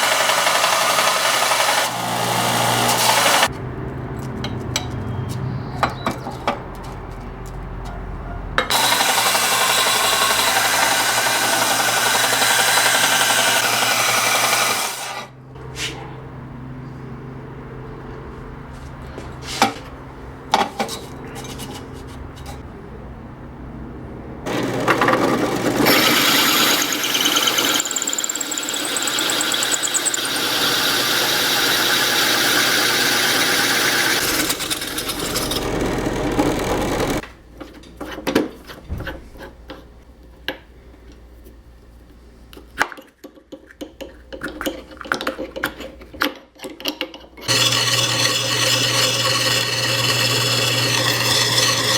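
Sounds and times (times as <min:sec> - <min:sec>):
power tool working: 0:00.0 - 0:03.5, 0:08.7 - 0:15.4, 0:24.5 - 0:37.2, 0:47.5 - 0:51.9.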